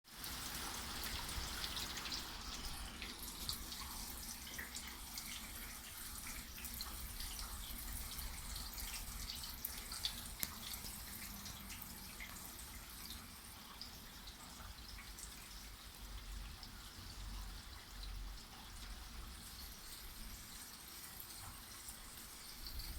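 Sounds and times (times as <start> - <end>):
raindrops pattering: 0.2 - 13.8.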